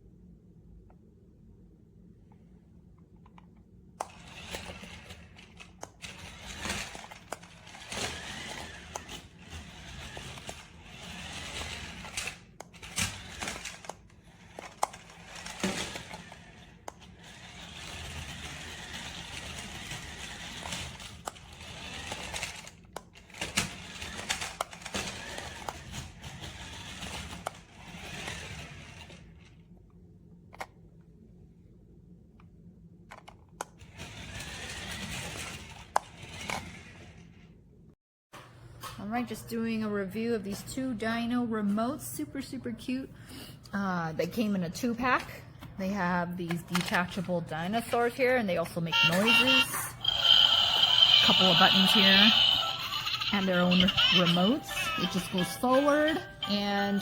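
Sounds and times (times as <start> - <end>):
plastic body and wheels rattling: 4.0 - 29.6, 33.1 - 37.3, 46.5 - 57.0
toy car motor whirring: 4.0 - 29.6, 33.1 - 37.5, 48.8 - 57.0.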